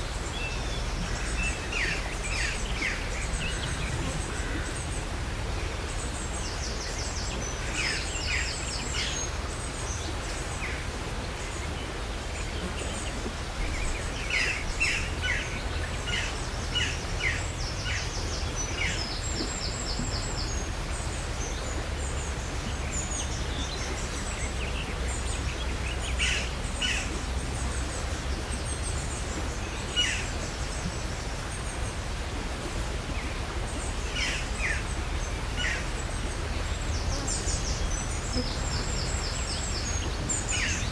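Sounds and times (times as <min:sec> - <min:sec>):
small birds chirping: 0:00.0 - 0:05.2, 0:33.0 - 0:40.9.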